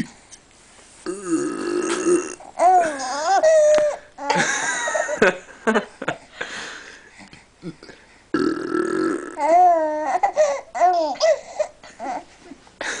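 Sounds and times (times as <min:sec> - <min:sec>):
loud burp: 0:01.1 - 0:02.4, 0:08.3 - 0:09.4
baby laughing: 0:02.6 - 0:05.2, 0:09.4 - 0:12.3.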